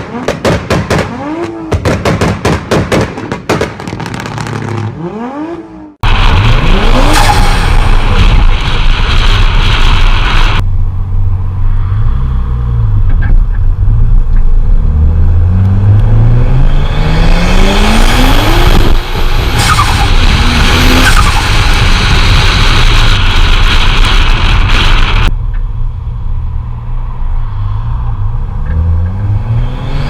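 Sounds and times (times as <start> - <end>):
turbocharged car engine accelerating: 4.4 - 10.7, 11.8 - 25.4, 27.6 - 30.0.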